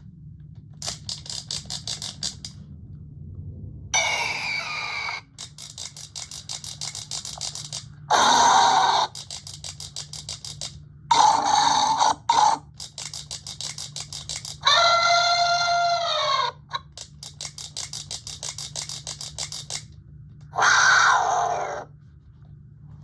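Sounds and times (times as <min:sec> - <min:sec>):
rapid toy clicking: 0:00.8 - 0:02.6, 0:05.4 - 0:16.1, 0:16.7 - 0:20.0.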